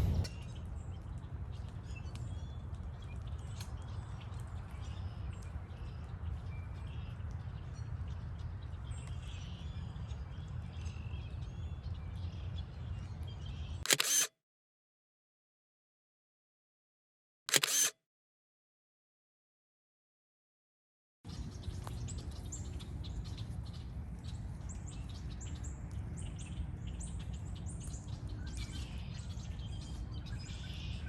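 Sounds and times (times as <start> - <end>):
steady low rumble: 0.0 - 0.4
songbirds chirping: 0.0 - 14.1, 21.3 - 31.0.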